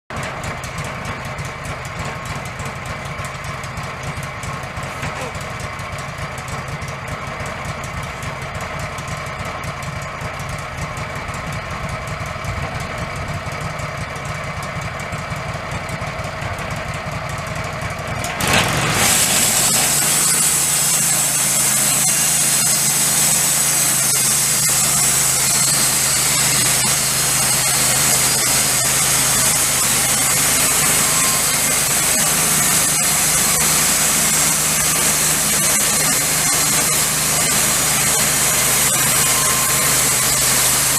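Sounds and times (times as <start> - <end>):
sawmill engine rumble: 0.1 - 40.9
band saw hissing through log: 18.4 - 40.9.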